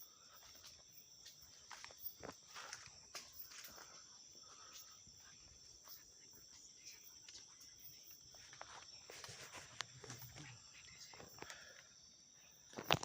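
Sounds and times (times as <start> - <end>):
insects chirring: 0.0 - 13.0
clicks and rustles: 12.7 - 13.0.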